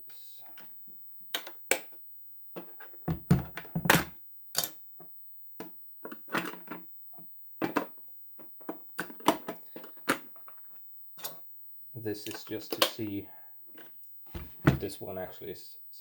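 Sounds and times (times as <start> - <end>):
plastic clicks and knocks: 2.6 - 4.7, 14.4 - 14.9
heavy thump: 14.4 - 15.2.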